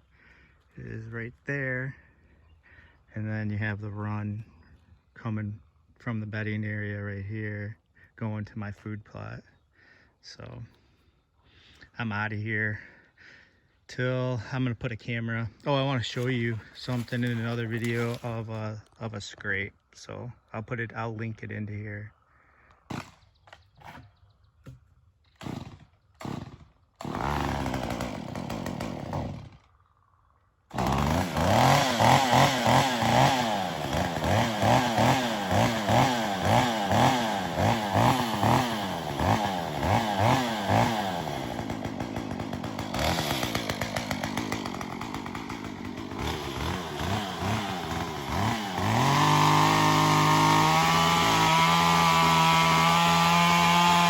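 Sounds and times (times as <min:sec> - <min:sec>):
chainsaw revving and cutting wood: 0:16.2 - 0:18.5, 0:22.8 - 0:23.2, 0:25.3 - 0:29.8, 0:30.7 - 0:54.0.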